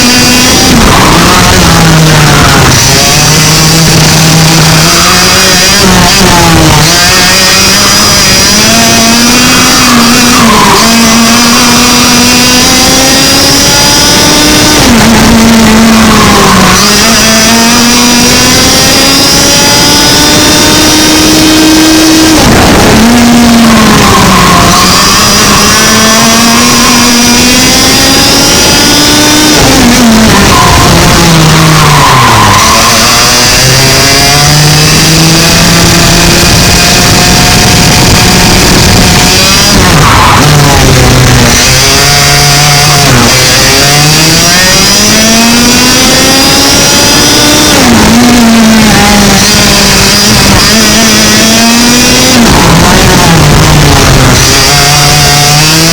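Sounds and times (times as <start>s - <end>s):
kart engine at full throttle: 0.0s - 55.9s.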